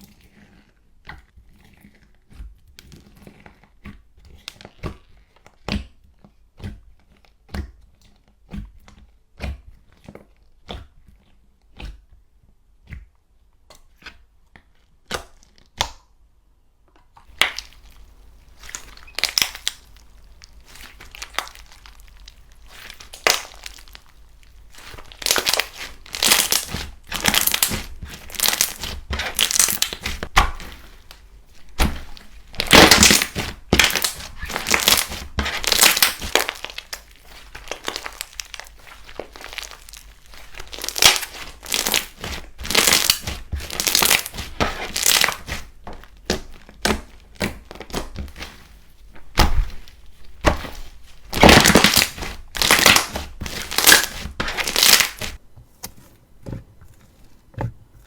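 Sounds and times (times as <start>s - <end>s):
slime squeezed crackling: 17.3s - 55.4s.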